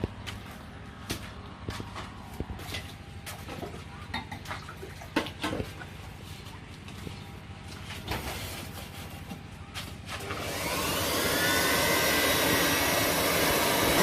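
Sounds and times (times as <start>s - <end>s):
low steady hum: 0.0s - 10.7s.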